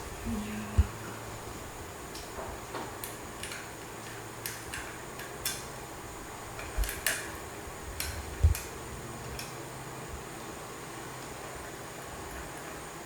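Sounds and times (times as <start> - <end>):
faint steady hum: 0.0 - 13.0
dull thumps: 0.7 - 1.0
small metallic clicks and taps: 2.1 - 5.7, 6.6 - 7.3.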